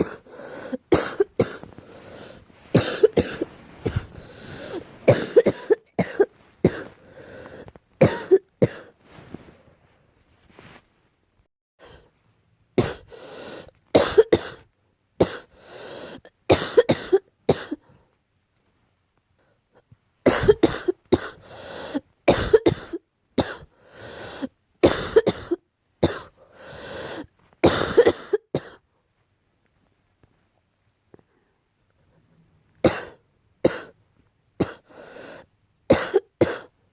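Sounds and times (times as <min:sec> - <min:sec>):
person coughing: 0:00.0 - 0:07.0, 0:08.0 - 0:08.9, 0:12.8 - 0:13.2, 0:14.0 - 0:15.5, 0:16.5 - 0:17.8, 0:20.3 - 0:21.4, 0:22.3 - 0:23.7, 0:24.8 - 0:26.4, 0:27.6 - 0:28.8, 0:32.9 - 0:34.0, 0:34.6 - 0:34.9, 0:35.9 - 0:36.8.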